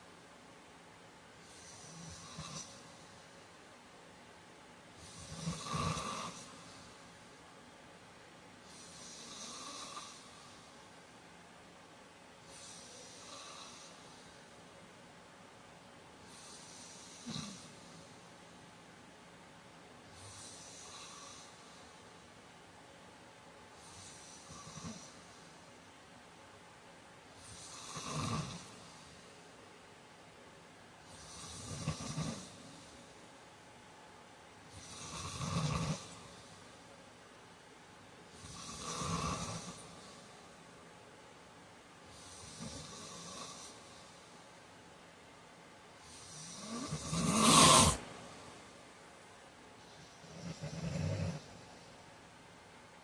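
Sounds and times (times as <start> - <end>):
man snoring: 1.5 - 2.9, 5.0 - 6.7, 8.7 - 10.4, 12.6 - 14.0, 16.4 - 17.8, 20.2 - 21.6, 23.9 - 25.2, 27.5 - 29.0, 31.1 - 32.6, 34.7 - 36.4, 38.3 - 40.1, 42.1 - 43.8, 46.1 - 48.1, 50.2 - 51.5.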